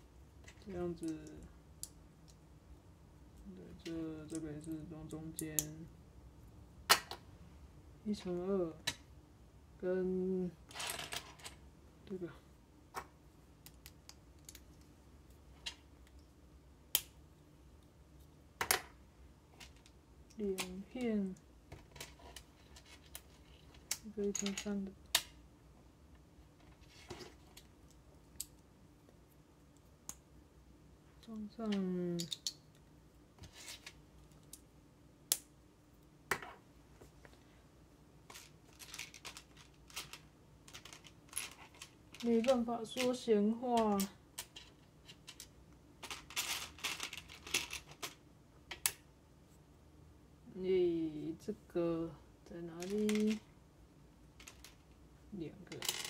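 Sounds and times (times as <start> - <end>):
light rustling of plastic parts: 0.2 - 2.5, 10.6 - 16.4, 17.0 - 30.2, 31.0 - 34.8, 35.9 - 49.7, 52.6 - 53.6, 54.3 - 56.0.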